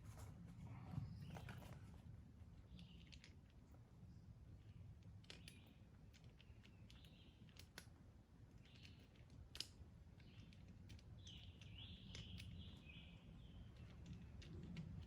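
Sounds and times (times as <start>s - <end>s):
small birds chirping: 4.1s - 7.7s, 8.5s - 9.4s, 10.1s - 15.0s.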